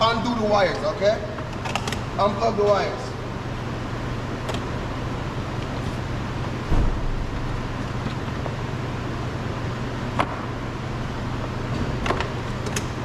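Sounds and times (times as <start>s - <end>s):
low hum: 6.6s - 11.7s
dull thump: 6.7s - 7.6s.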